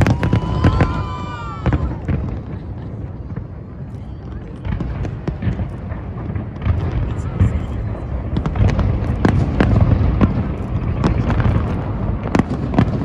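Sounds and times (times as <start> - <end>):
firework whistle: 0.0 - 3.4
crowd voices: 0.0 - 13.0
firework bang: 0.0 - 13.0
firework pops and crackles: 0.0 - 13.0.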